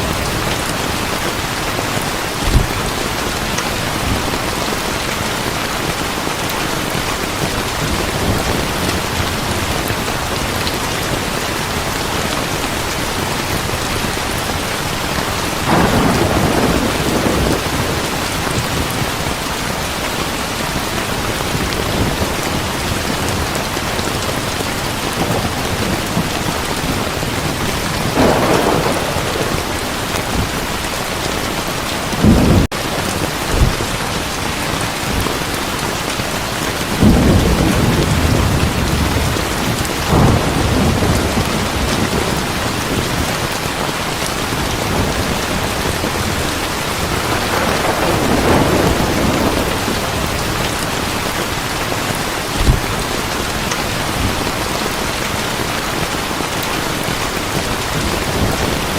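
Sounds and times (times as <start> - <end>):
loud thunder clap: 0.0 - 4.8, 15.6 - 19.0, 25.0 - 31.2, 32.1 - 34.2, 37.0 - 43.4, 44.5 - 51.4
thunder rolling: 0.0 - 6.0, 15.2 - 19.4, 20.7 - 34.2, 37.0 - 43.4, 44.5 - 51.6
heavy rain falling: 0.0 - 58.9.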